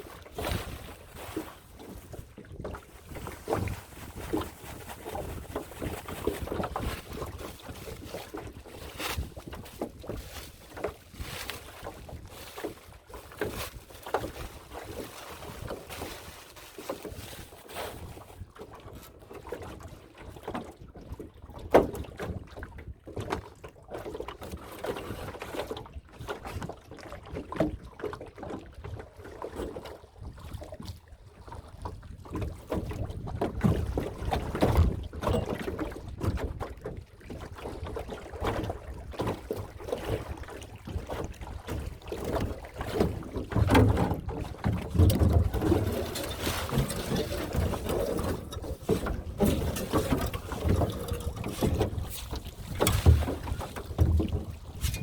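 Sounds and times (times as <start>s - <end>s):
water lapping: 0.0s - 55.0s
wind on microphone: 42.4s - 55.0s.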